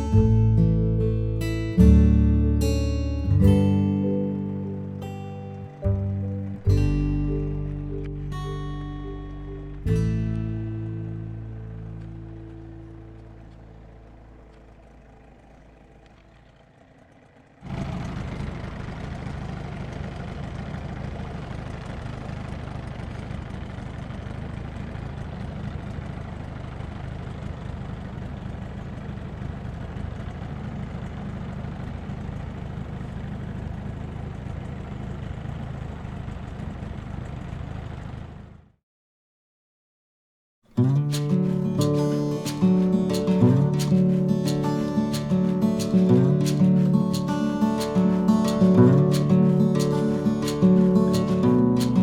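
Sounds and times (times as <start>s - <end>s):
small outboard motor running: 10.6s - 38.4s.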